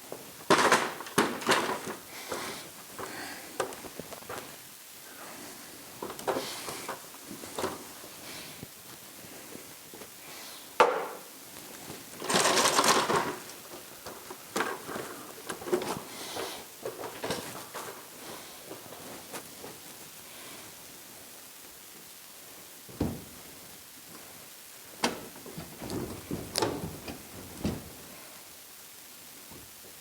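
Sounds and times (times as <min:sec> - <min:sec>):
scraping rustling noise: 0:11.5 - 0:20.9, 0:23.2 - 0:28.4.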